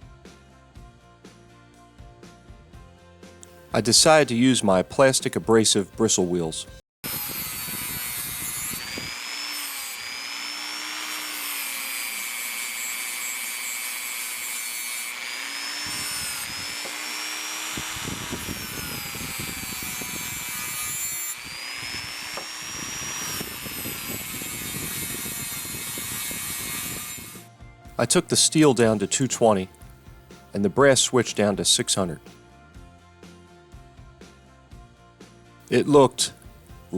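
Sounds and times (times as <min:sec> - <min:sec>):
power tool motor whine: 0:07.0 - 0:27.5
bristle wheel scrubbing steel: 0:07.1 - 0:27.4.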